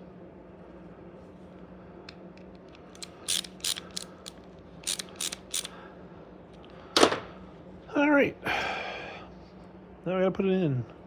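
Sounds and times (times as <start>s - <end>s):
metallic tool clicks: 2.7s - 5.7s.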